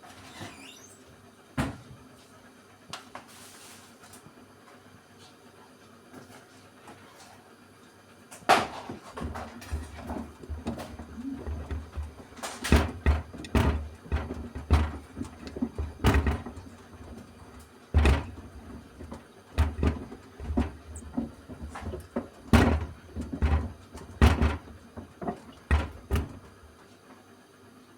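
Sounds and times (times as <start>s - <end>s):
shoes thumping in washing machine: 8.5s - 26.8s.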